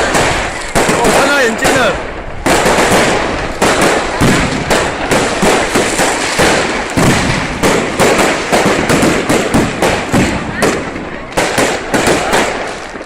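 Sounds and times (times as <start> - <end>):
firework crackle: 0.0 - 13.0
firework shells banging: 0.0 - 13.0.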